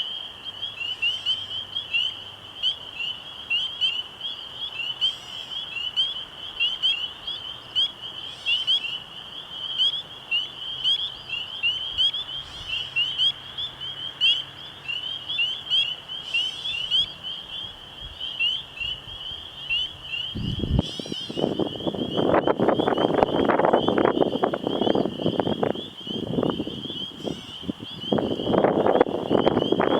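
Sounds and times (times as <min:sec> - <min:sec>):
frogs peeping in chorus: 0:00.0 - 0:29.9
wind noise: 0:17.6 - 0:29.9.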